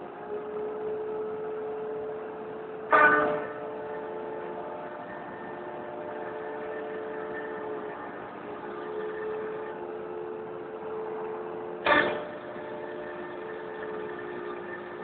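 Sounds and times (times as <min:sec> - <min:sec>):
machine motor hum: 0:00.0 - 0:15.0
ringing metallic clang: 0:02.9 - 0:10.2, 0:11.8 - 0:15.0.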